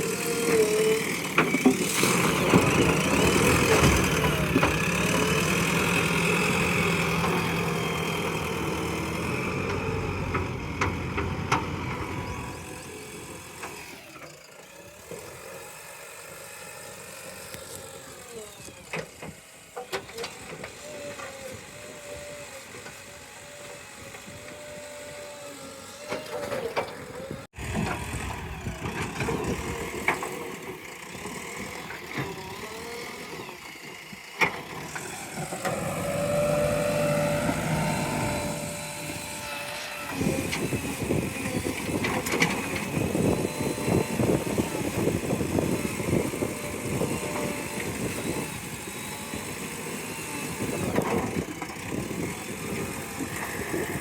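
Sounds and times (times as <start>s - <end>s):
diesel engine running: 0.0s - 15.4s, 27.0s - 54.0s
rising and falling whine: 35.2s - 40.4s.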